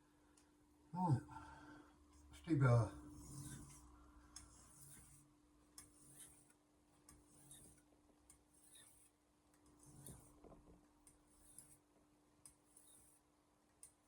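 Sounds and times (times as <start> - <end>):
knife scraping on whetstone: 3.1 - 3.8, 4.5 - 5.2, 5.8 - 6.5, 7.3 - 7.8, 8.5 - 9.1.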